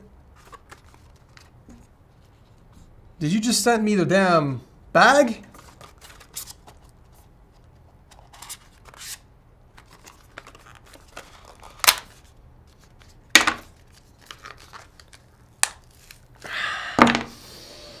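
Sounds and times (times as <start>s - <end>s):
packaging crinkling: 9.8s - 16.4s.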